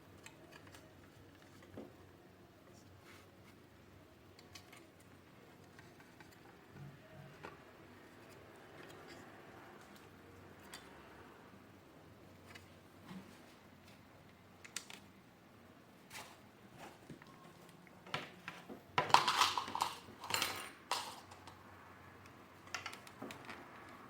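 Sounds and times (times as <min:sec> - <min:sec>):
plastic parts clattering: 0:18.2 - 0:21.6.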